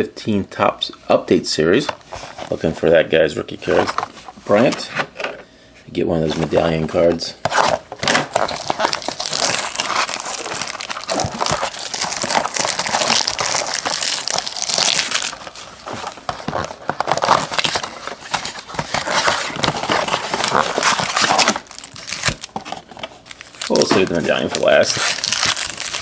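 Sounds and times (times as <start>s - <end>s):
plastic and foil wrappers crinkling: 7.6s - 26.0s.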